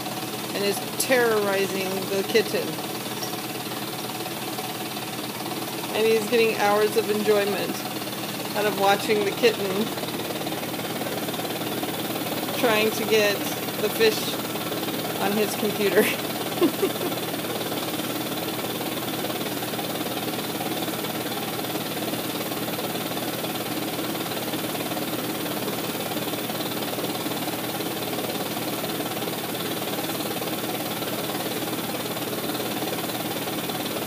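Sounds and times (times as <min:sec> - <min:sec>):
mechanical whirring hum: 0:00.0 - 0:29.8.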